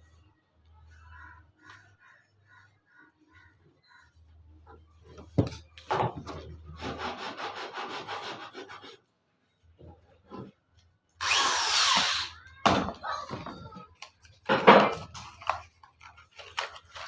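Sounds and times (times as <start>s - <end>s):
wood being sawn by hand: 6.8s - 9.0s.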